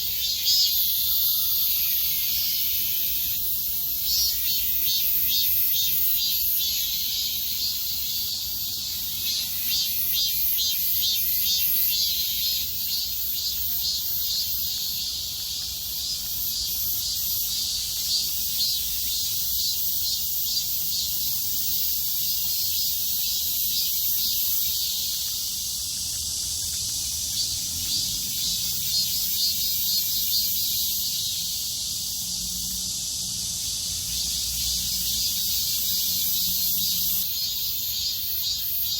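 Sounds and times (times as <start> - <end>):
cicadas buzzing in chorus: 0.0 - 38.9.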